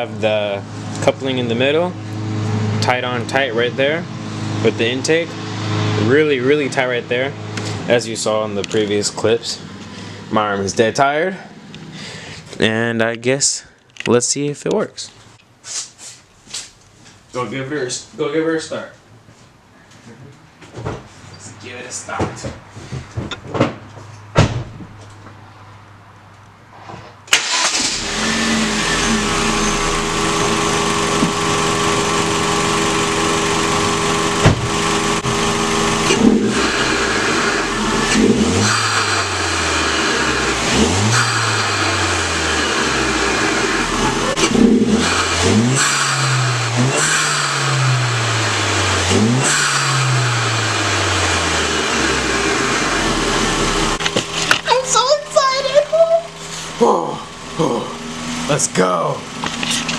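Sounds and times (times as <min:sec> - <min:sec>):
car engine revving: 0:00.0 - 0:12.2, 0:27.3 - 0:59.9
car engine starting and idling: 0:00.0 - 0:12.6, 0:27.3 - 0:59.9
thump: 0:23.2 - 0:24.9, 0:34.4 - 0:34.7.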